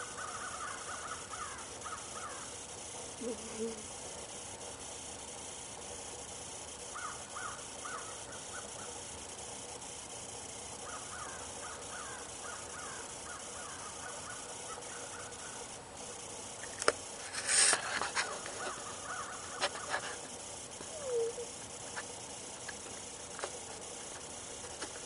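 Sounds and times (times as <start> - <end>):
birds calling: 0.0 - 2.6, 6.8 - 9.1, 10.8 - 15.8, 18.0 - 23.2
steady background hiss: 0.0 - 25.0
sharp clicks: 16.6 - 17.0.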